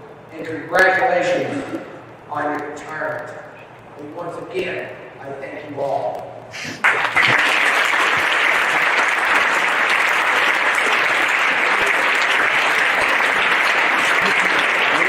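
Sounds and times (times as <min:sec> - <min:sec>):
large audience applauding: 0:06.8 - 0:15.0.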